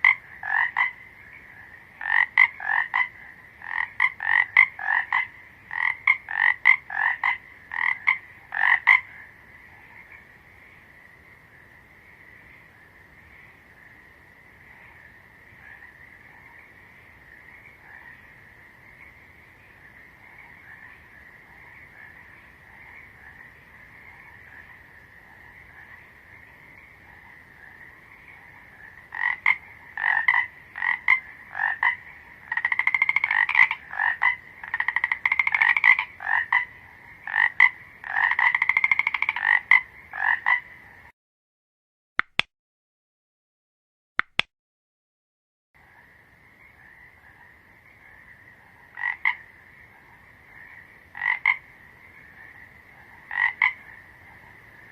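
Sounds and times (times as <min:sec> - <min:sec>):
frog chorus: 0:00.0 - 0:41.1, 0:45.8 - 0:54.9
loud close frog croaks: 0:00.0 - 0:41.1, 0:45.8 - 0:54.9
short clicks: 0:44.2 - 0:44.5.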